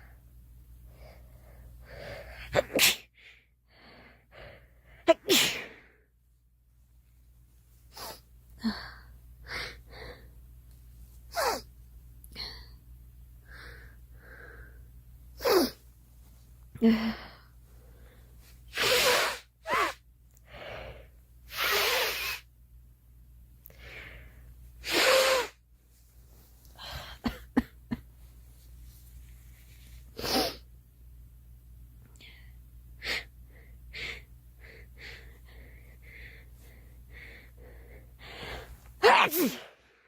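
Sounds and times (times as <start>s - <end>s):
girl sneezing: 2.6s - 3.1s, 5.1s - 5.7s, 11.3s - 11.7s, 18.7s - 20.0s, 21.5s - 22.4s, 24.8s - 25.6s, 39.0s - 39.7s.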